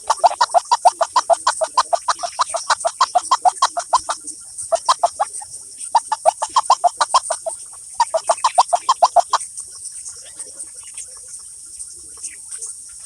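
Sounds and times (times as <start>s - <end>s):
bird clucking call: 0.0s - 9.4s.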